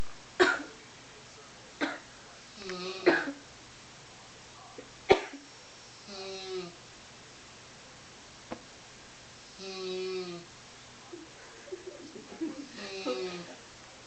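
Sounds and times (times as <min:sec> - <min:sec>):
voiced snoring sounds: 0:02.5 - 0:03.1, 0:06.0 - 0:06.8, 0:09.5 - 0:10.5, 0:12.7 - 0:13.5
person snorting in sleep: 0:02.5 - 0:03.4, 0:06.0 - 0:06.8, 0:09.5 - 0:10.5, 0:12.6 - 0:13.6.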